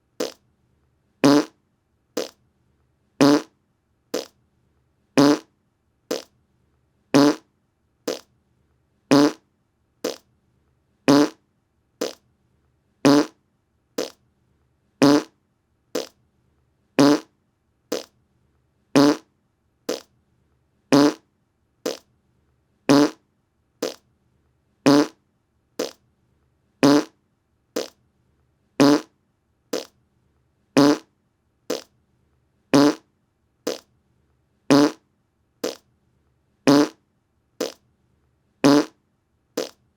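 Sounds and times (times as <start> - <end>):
short fart sounds: 0.2 - 0.4, 1.2 - 1.6, 2.2 - 2.4, 3.2 - 3.5, 4.2 - 4.4, 5.2 - 5.5, 6.1 - 6.3, 7.2 - 7.4, 8.1 - 8.3, 9.1 - 9.4, 10.0 - 10.3, 11.1 - 11.4, 12.0 - 12.2, 13.1 - 13.4, 14.0 - 14.2, 15.0 - 15.4, 16.0 - 16.2, 17.0 - 17.3, 17.9 - 18.1, 19.0 - 19.3, 19.9 - 20.1, 20.9 - 21.2, 21.9 - 22.1, 22.9 - 23.2, 23.8 - 24.0, 24.9 - 25.2, 25.8 - 26.0, 26.8 - 27.2, 27.8 - 28.0, 28.8 - 29.1, 29.7 - 29.9, 30.8 - 31.1, 31.7 - 31.9, 32.8 - 33.0, 33.7 - 33.9, 34.7 - 35.0, 35.6 - 35.8, 36.7 - 37.0, 37.6 - 37.8, 38.6 - 39.0, 39.6 - 39.8.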